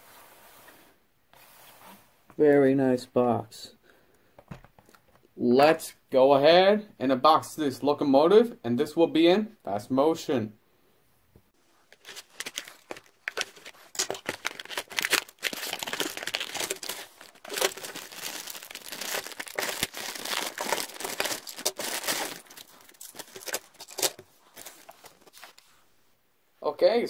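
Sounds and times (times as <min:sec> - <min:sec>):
packaging crumpled and torn: 0:11.9 - 0:25.7.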